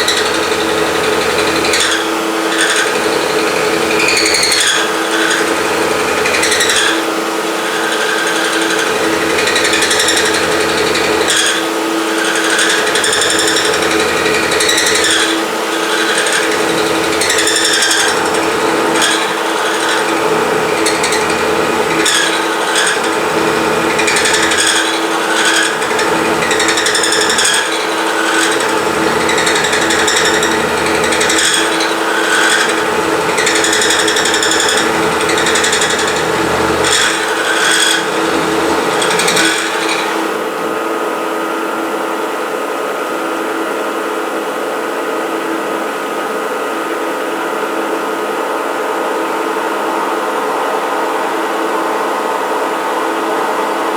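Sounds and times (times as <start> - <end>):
milling machine cutting metal: 0.0 - 42.0
motor hum: 0.0 - 42.2.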